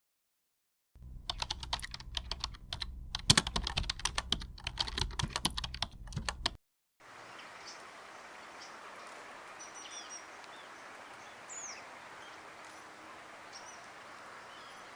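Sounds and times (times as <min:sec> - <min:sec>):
keyboard typing clicks: 0:01.0 - 0:06.6
low hum: 0:01.0 - 0:06.6.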